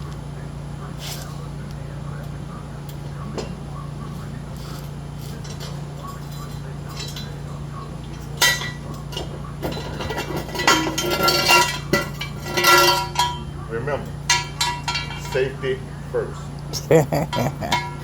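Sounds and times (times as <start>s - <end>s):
steady low hum: 0.0s - 18.0s
metal clinking and clanking: 4.6s - 15.6s, 17.2s - 18.0s.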